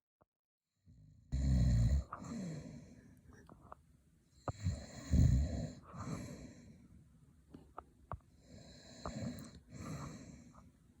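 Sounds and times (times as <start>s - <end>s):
man snoring: 1.3s - 2.8s, 4.5s - 6.2s, 8.5s - 10.2s.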